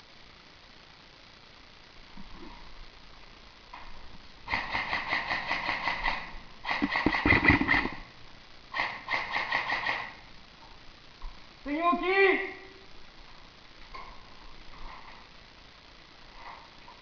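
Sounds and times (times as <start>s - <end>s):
airsoft gun firing bursts: 4.5s - 8.0s, 8.7s - 10.2s.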